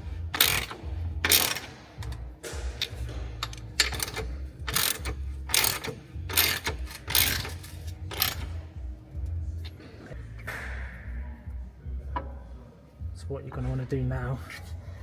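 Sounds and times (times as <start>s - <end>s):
low steady hum: 0.0s - 15.0s
ratchet wrench clicking: 0.3s - 2.2s, 2.8s - 8.6s.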